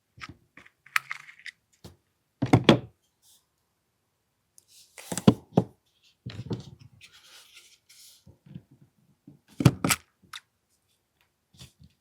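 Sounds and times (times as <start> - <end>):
clicks and knocks of small parts: 0.2 - 1.9.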